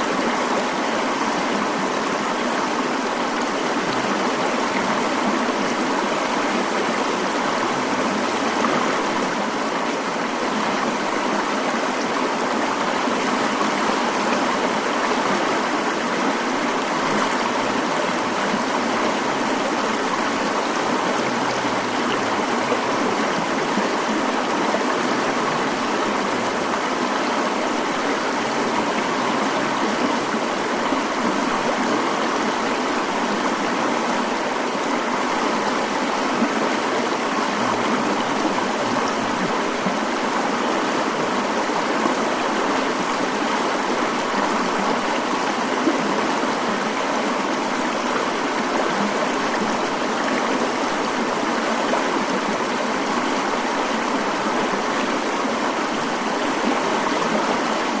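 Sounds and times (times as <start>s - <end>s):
stream rushing: 0.0s - 58.0s.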